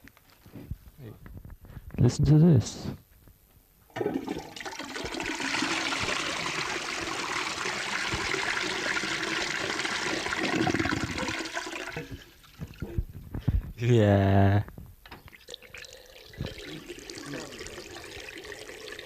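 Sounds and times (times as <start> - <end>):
toilet flushing: 3.9 - 12.8, 15.3 - 19.0.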